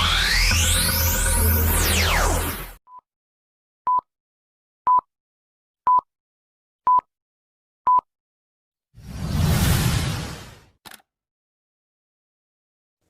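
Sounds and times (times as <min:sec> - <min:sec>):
synth music: 0:00.0 - 0:02.8.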